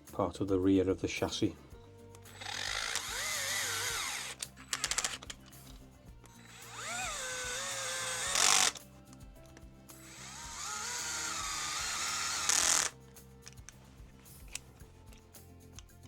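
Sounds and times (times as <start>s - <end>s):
electric screwdriver motor whine: 2.3s - 5.4s, 6.4s - 8.8s, 10.0s - 13.0s.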